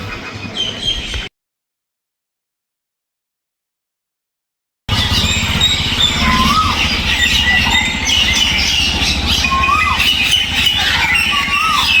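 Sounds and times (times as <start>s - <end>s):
flock of birds chirping: 0.0s - 1.3s, 4.9s - 12.0s
steady low rumble: 4.9s - 12.0s
whistled bird call: 4.9s - 12.0s.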